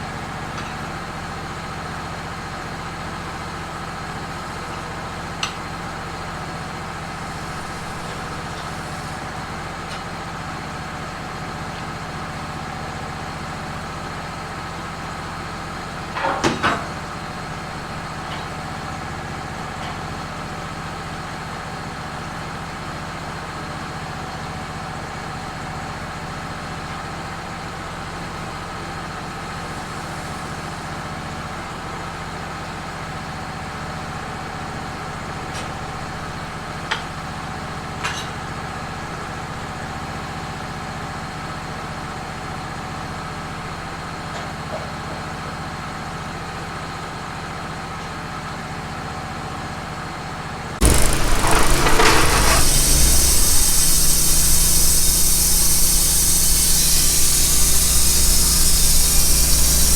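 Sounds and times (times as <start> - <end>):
click: 50.8 - 59.9
sawmill humming: 50.8 - 59.9
short clatter: 50.8 - 59.9.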